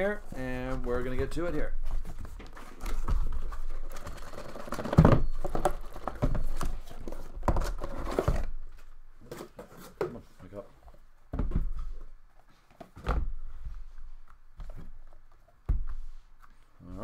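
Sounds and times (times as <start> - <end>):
packaging rustling: 1.8 - 8.5.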